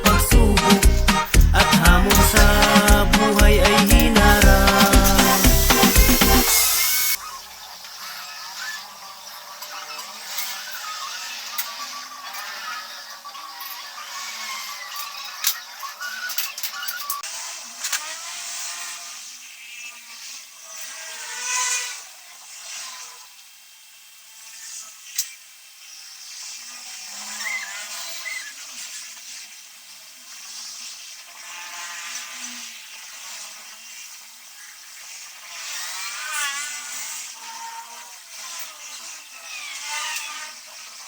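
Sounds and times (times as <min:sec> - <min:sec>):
small power tool whining: 0:02.8 - 0:07.3.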